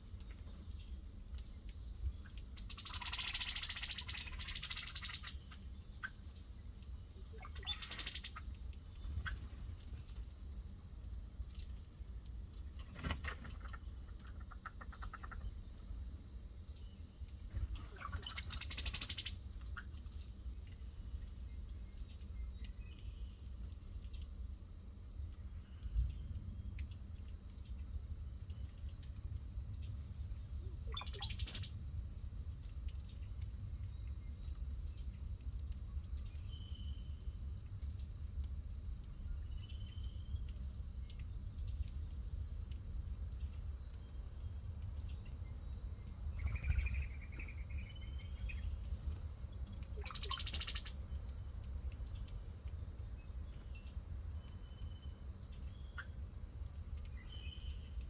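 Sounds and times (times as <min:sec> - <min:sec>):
crickets droning: 0:00.0 - 0:58.0
faint bird chirps: 0:00.1 - 0:10.3, 0:11.5 - 0:24.3, 0:28.4 - 0:38.3, 0:39.0 - 0:58.0
bird calls: 0:01.8 - 0:06.5, 0:07.2 - 0:10.0, 0:12.9 - 0:15.9, 0:17.5 - 0:20.3, 0:30.6 - 0:31.8, 0:46.2 - 0:52.3.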